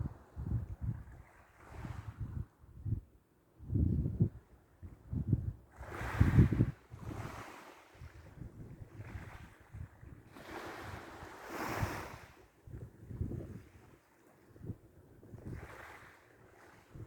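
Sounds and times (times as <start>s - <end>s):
wind buffeting microphone: 0.0s - 7.4s, 8.0s - 13.8s, 14.6s - 15.9s
waves washing in: 10.3s - 12.4s.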